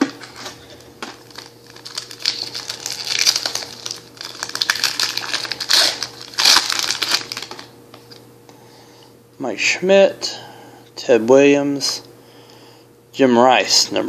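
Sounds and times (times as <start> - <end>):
wrapper tearing and crinkling: 0.2 - 7.7.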